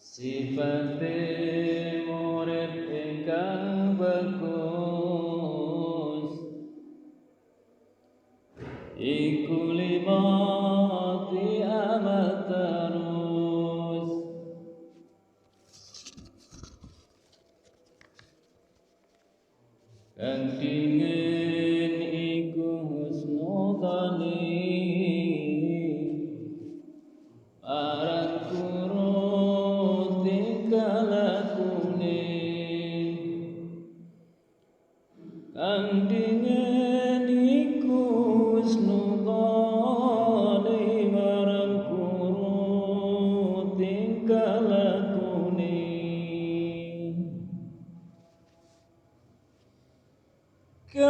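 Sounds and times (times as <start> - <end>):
man chanting prayer call: 0.0 - 6.5, 8.9 - 14.6, 20.2 - 26.8, 27.6 - 34.0, 35.3 - 47.7.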